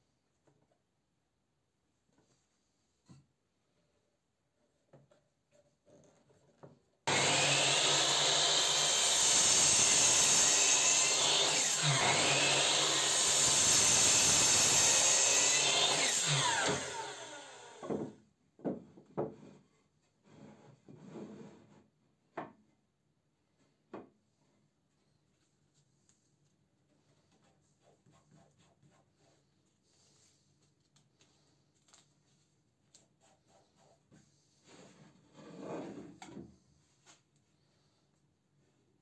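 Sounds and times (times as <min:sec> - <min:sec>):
power tool cutting wood: 0:07.1 - 0:18.1.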